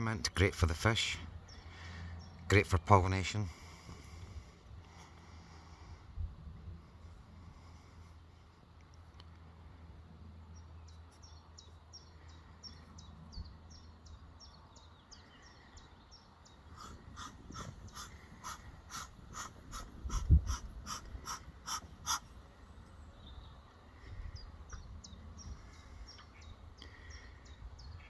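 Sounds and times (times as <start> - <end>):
small birds chirping: 0.0 - 5.8, 7.4 - 28.0
sharp repeated bird calls: 16.5 - 22.4.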